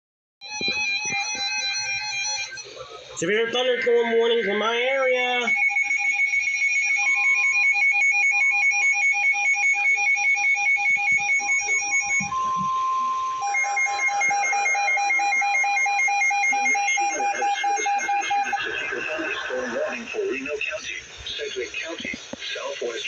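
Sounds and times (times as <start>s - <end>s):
steady warning alarm tone: 0.4s - 21.3s
two-tone alarm beeps: 3.4s - 20.8s.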